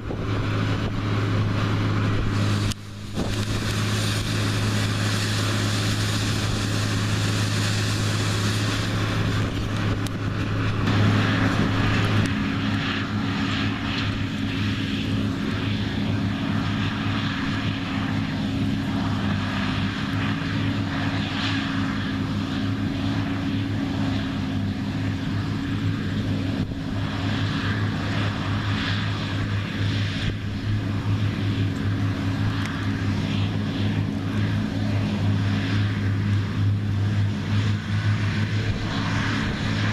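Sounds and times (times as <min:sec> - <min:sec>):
combine engine drone: 0:00.0 - 0:39.9
threshing machinery hiss: 0:02.3 - 0:09.5.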